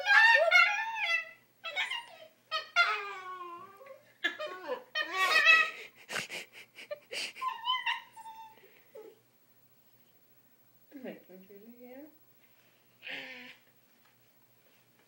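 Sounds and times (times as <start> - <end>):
dog whining and yowling: 0.0 - 5.9, 7.4 - 9.2.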